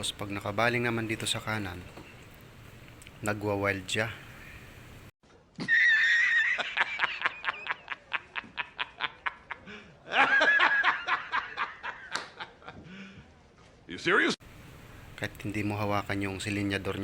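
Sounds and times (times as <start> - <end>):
high-pitched squealing laughter: 5.6 - 11.9.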